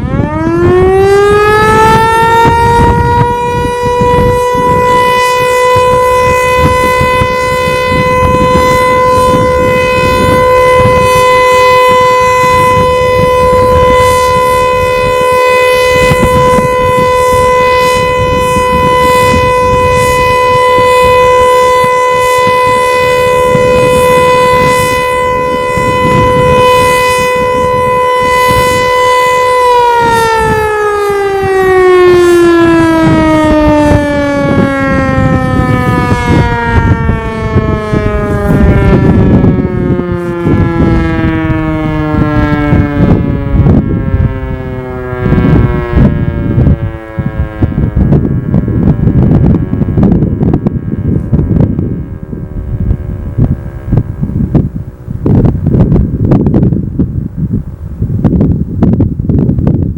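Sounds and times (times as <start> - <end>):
warning siren: 0.0 - 59.9
low rumble: 32.6 - 59.9.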